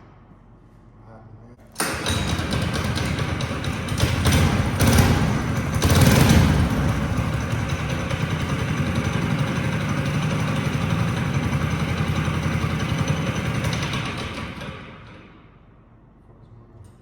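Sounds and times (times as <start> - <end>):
small engine idling: 2.0 - 15.2.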